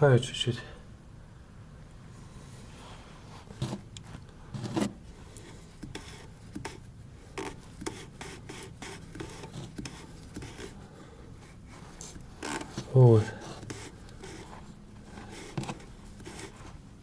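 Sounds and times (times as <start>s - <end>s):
grease scraping and rubbing: 4.5s - 16.8s.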